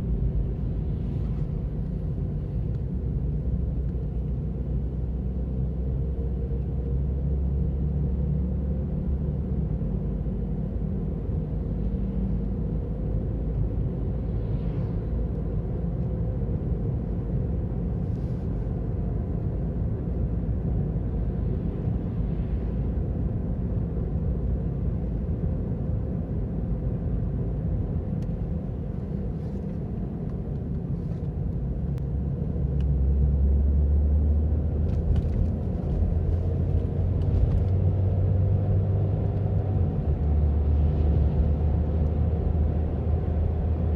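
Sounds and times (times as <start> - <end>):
tyre and road rumble: 33.8 - 40.2.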